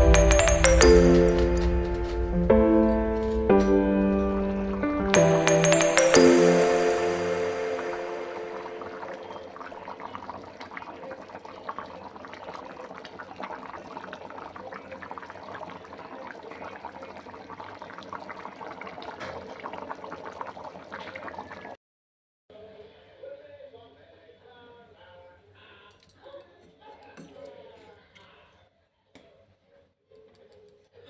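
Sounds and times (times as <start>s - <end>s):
curry bubbling in a pan: 9.1s - 21.8s.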